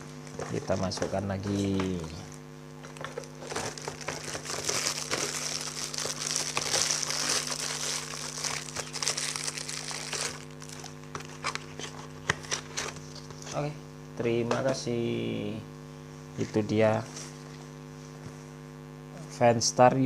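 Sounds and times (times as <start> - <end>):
packaging crinkling: 2.8 - 13.5.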